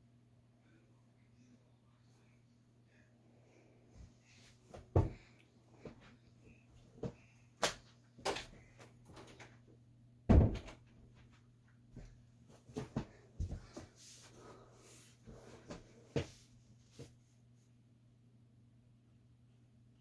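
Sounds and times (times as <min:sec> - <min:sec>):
faint steady hum: 0:00.0 - 0:20.0
knocks and thumps: 0:10.3 - 0:10.8.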